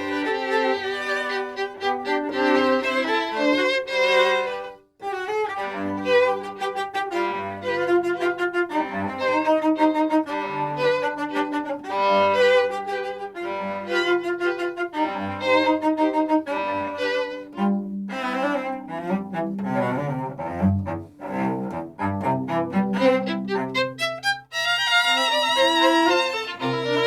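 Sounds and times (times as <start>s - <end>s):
string trio playing baroque music: 0.0s - 27.0s.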